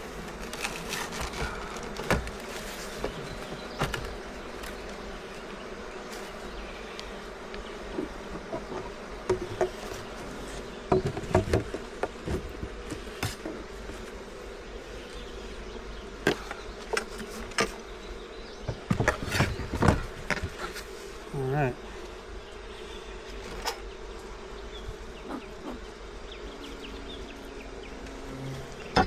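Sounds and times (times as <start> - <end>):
bees buzzing: 0.0 - 29.0
hive frames knocking and clicking: 0.2 - 21.0.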